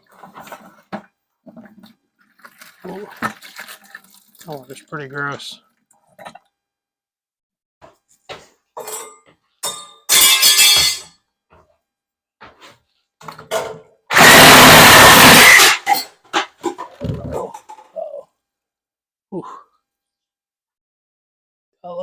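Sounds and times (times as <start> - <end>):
handheld power tool running: 14.1 - 15.9.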